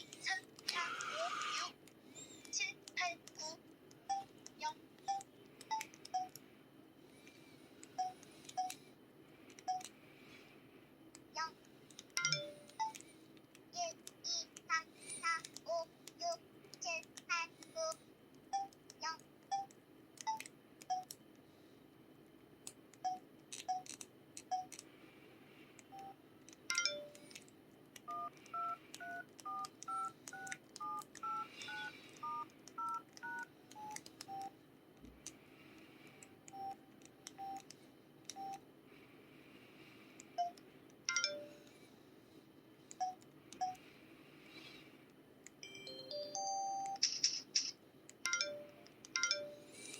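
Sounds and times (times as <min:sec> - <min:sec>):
phone keypad beeps: 0:05.1 - 0:06.4, 0:09.7 - 0:09.9, 0:12.2 - 0:13.0, 0:28.1 - 0:34.5, 0:45.6 - 0:47.2
two-tone dialing beeps: 0:28.1 - 0:34.5.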